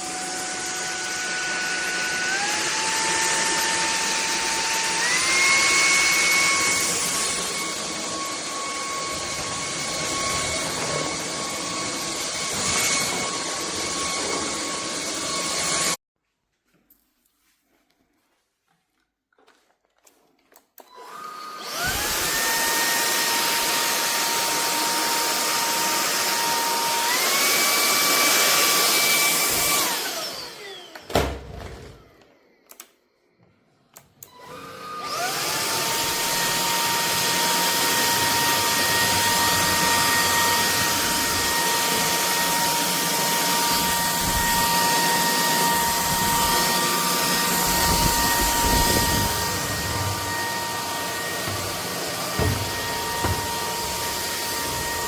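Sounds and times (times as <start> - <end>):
vacuum cleaner motor whining: 0.0 - 16.0, 20.8 - 32.9, 33.9 - 55.0
knock: 52.4 - 53.5.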